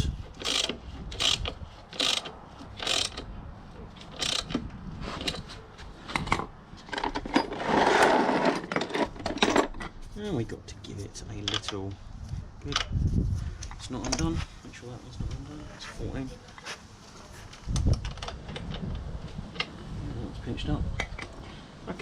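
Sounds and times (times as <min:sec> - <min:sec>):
ratchet wrench clicking: 0:00.4 - 0:03.3, 0:04.0 - 0:04.6.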